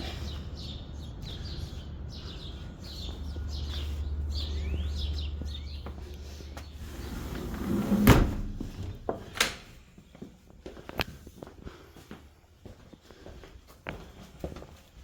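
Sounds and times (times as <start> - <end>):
small birds chirping: 0.0 - 7.7
steady low rumble: 0.0 - 10.6.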